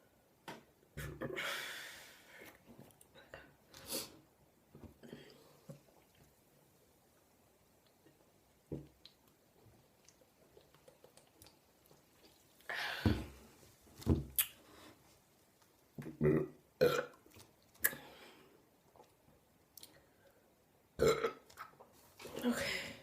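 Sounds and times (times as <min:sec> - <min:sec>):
woman burping: 0:16.2 - 0:17.1, 0:21.0 - 0:21.4.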